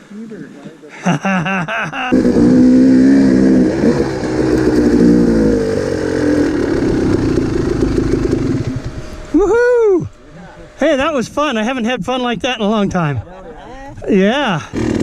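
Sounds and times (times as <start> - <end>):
dirt bike engine revving: 2.1 - 12.7, 14.6 - 15.0.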